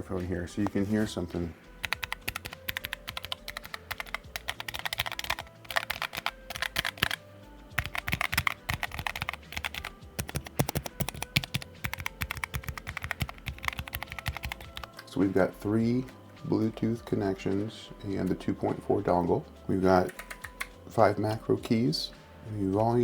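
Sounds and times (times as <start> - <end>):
clacking keystrokes: 1.8 - 7.2, 7.8 - 15.0, 20.0 - 20.8.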